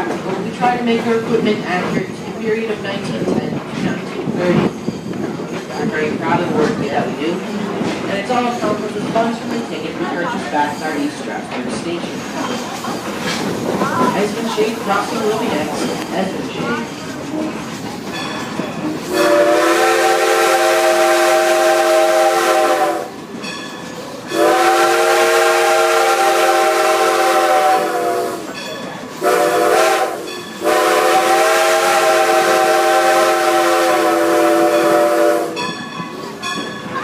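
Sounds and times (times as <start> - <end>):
steam locomotive chime whistle: 18.9 - 23.6, 24.3 - 36.7.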